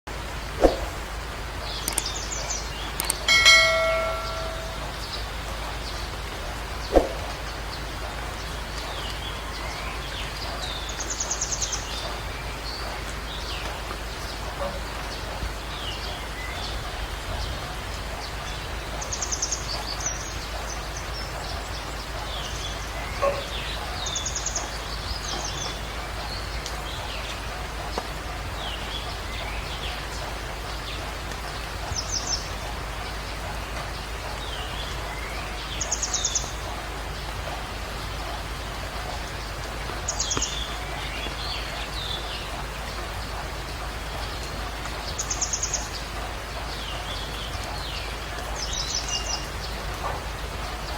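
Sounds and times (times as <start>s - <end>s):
background hiss: 0.1s - 50.9s
songbird trill: 1.6s - 37.3s, 38.6s - 50.9s
bird chirps: 1.7s - 6.1s.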